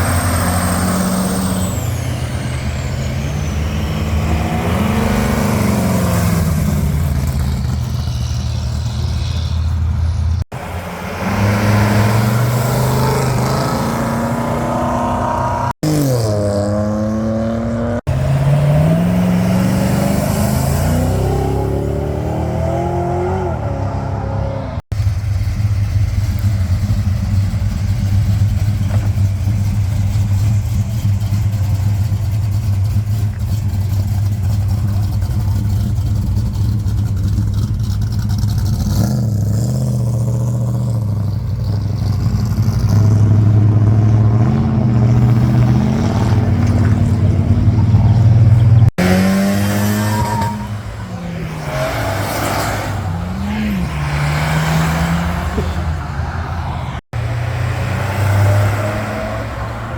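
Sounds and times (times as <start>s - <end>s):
car engine idling and revving: 0.0s - 59.9s
another engine revving: 10.4s - 24.9s, 42.0s - 59.9s.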